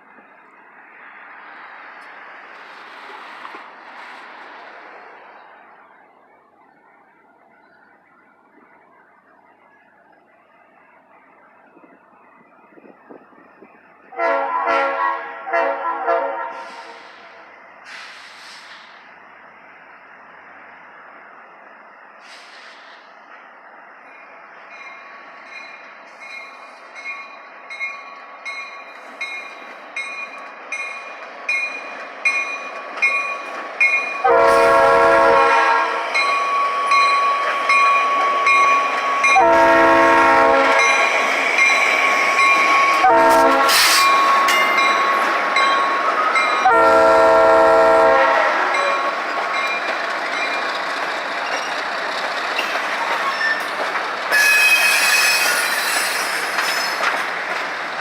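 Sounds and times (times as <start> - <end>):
train rumble and wheel clatter: 0.0 - 58.0
locomotive air horn: 14.1 - 18.6, 34.2 - 41.0, 42.6 - 44.3, 46.6 - 49.1, 54.3 - 56.2
crossing bell ringing: 24.7 - 47.6, 48.7 - 50.8, 54.3 - 57.0.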